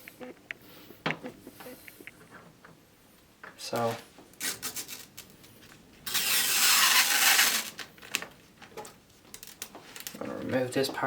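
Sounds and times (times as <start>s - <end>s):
plastic film ripping off: 3.8s - 5.3s, 6.0s - 8.4s.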